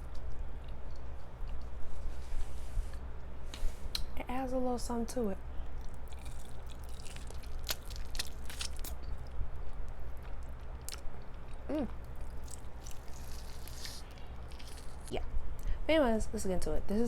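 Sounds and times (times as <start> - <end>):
chewing crispy fried chicken: 5.6 - 15.2
person humming: 11.7 - 12.0.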